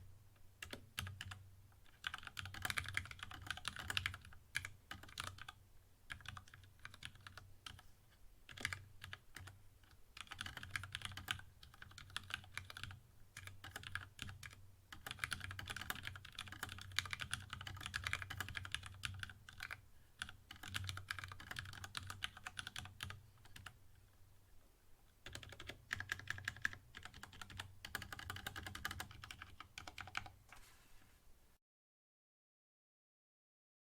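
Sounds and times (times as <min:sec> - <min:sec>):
mechanical keyboard typing: 0:00.6 - 0:07.8, 0:08.5 - 0:09.6, 0:10.2 - 0:23.8, 0:25.2 - 0:30.4.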